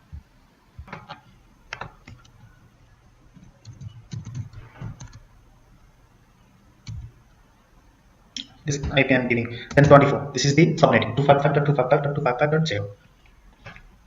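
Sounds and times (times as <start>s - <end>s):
computer keyboard typing: 0.8s - 2.6s, 3.3s - 5.2s, 6.8s - 7.1s.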